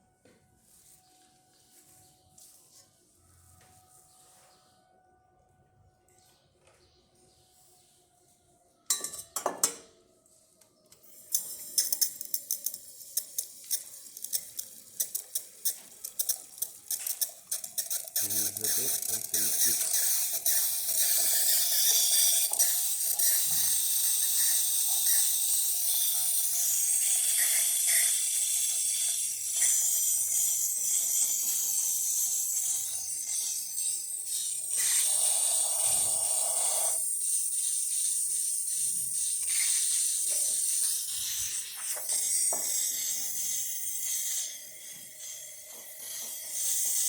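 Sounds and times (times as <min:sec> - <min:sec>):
steam wand hissing: 0:12.6 - 0:47.0.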